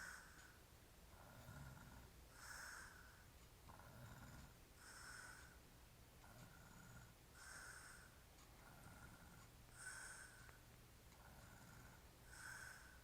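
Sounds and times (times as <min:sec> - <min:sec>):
man snoring: 0:01.1 - 0:03.1, 0:03.7 - 0:05.4, 0:06.2 - 0:10.4, 0:11.2 - 0:13.0.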